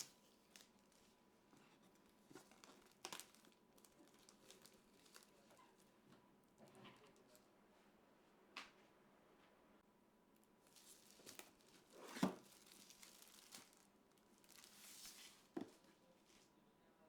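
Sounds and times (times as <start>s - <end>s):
crinkling and rustling: 0.0s - 7.5s, 10.6s - 16.5s.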